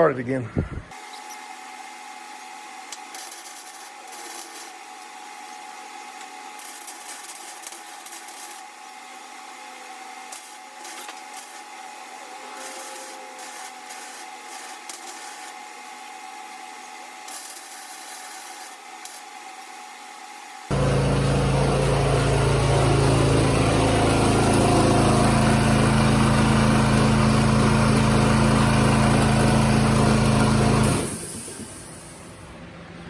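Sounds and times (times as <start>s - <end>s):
scratchy metalwork noise: 12.3s - 15.4s
steady hum: 20.7s - 30.0s.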